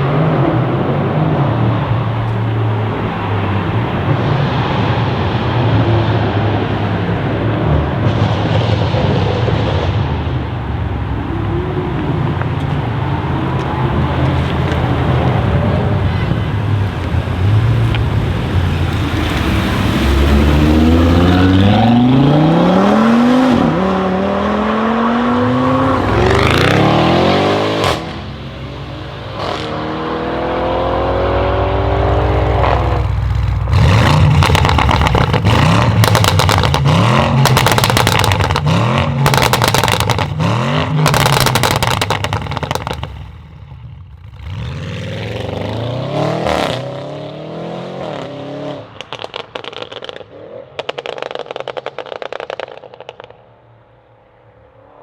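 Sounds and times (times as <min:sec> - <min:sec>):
exhaust crackling and popping: 0:00.0 - 0:22.3, 0:31.5 - 0:44.8, 0:48.8 - 0:53.7
car engine accelerating through upshifts: 0:17.0 - 0:43.1, 0:44.3 - 0:53.4.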